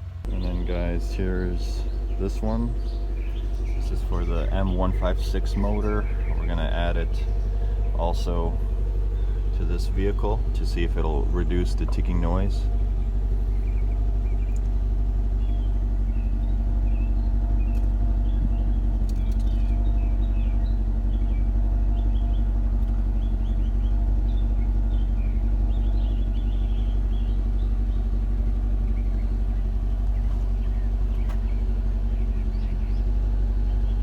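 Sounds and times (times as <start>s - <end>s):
car engine idling: 0.0s - 34.0s
engine lifter ticking: 0.0s - 34.0s.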